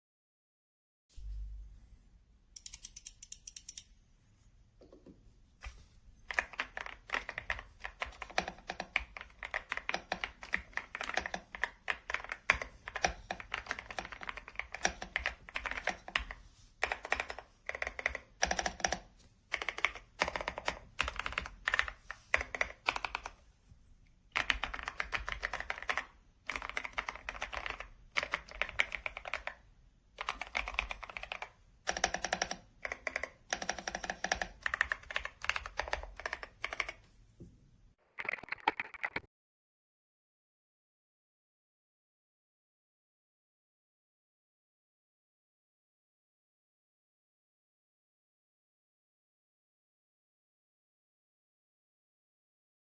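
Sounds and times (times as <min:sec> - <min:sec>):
mechanical keyboard clacking: 0:06.3 - 0:23.3, 0:24.3 - 0:29.6, 0:30.2 - 0:37.0.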